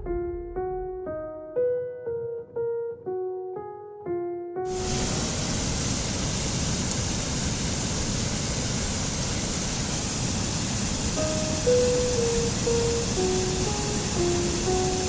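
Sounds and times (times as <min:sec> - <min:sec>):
piano notes: 0:00.0 - 0:06.6, 0:11.1 - 0:15.0
waterfall rushing: 0:04.7 - 0:15.0.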